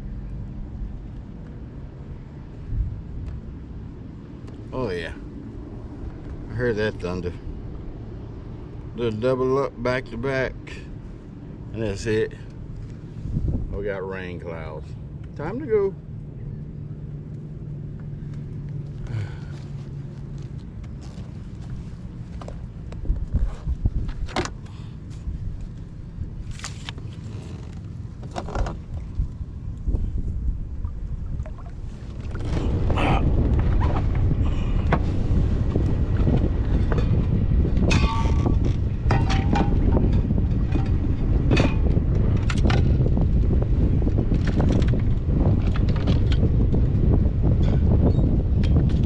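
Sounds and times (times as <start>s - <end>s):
wind buffeting microphone: 0.0s - 49.0s
water splashing: 30.7s - 33.2s.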